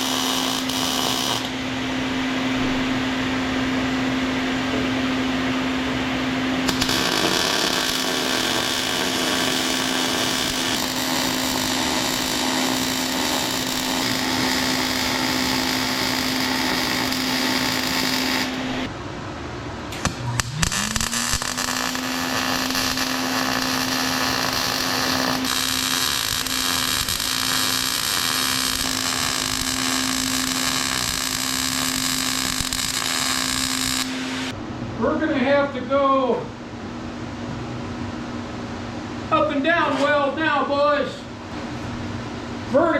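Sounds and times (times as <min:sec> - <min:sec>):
arc welding crackling hiss: 0:00.0 - 0:01.6, 0:06.7 - 0:18.9, 0:20.0 - 0:34.6
welder hum: 0:00.0 - 0:02.4, 0:05.1 - 0:18.9, 0:19.9 - 0:34.6.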